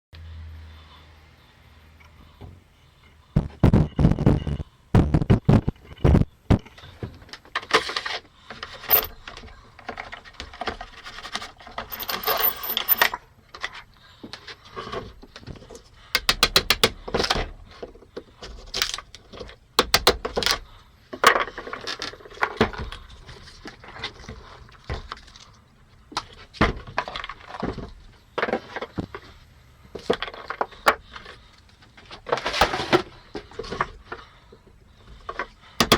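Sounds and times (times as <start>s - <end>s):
metallic tool clinks and scrapes: 8.8s - 9.2s, 11.9s - 13.2s.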